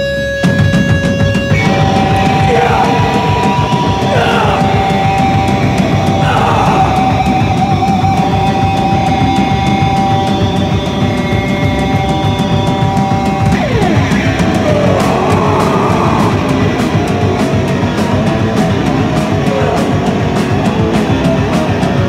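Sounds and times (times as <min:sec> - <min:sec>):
high held guitar tone: 0:00.0 - 0:22.0
live heavy rock band: 0:00.0 - 0:22.0.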